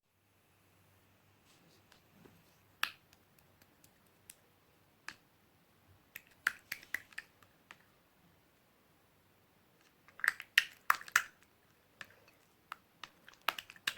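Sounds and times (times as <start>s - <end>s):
slime popping and clicking: 10.1s - 11.4s, 12.7s - 13.9s.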